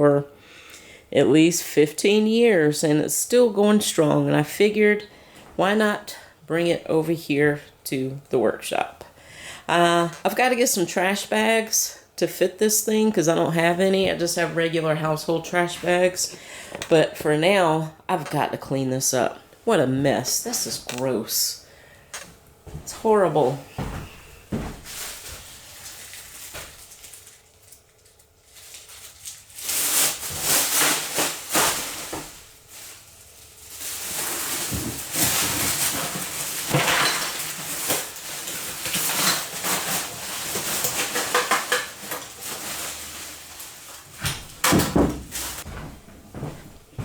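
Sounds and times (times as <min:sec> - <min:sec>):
plastic bags rustling: 0:20.1 - 0:47.0.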